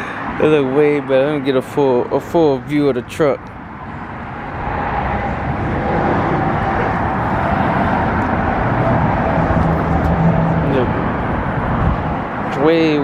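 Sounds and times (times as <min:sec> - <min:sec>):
motor vehicle rumble: 0:03.4 - 0:13.0.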